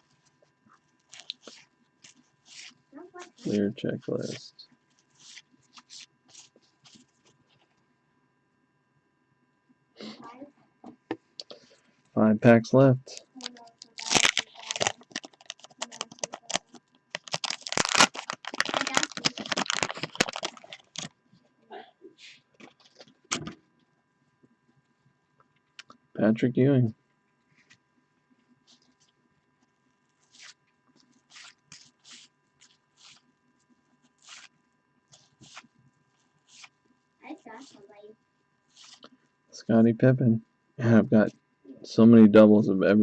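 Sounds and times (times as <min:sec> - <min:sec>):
wax pack crackling and tearing: 0:01.0 - 0:03.5, 0:13.1 - 0:21.2, 0:30.2 - 0:33.3, 0:34.0 - 0:34.5, 0:36.4 - 0:36.8, 0:38.7 - 0:39.1
trading cards swishing: 0:31.3 - 0:33.2, 0:34.2 - 0:34.5, 0:36.5 - 0:36.8, 0:38.7 - 0:39.0.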